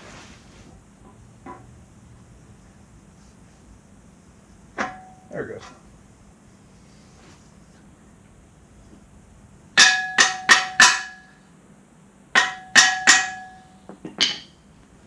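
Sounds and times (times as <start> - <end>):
hammer blows ringing on steel: 9.8 - 11.4, 12.4 - 14.4.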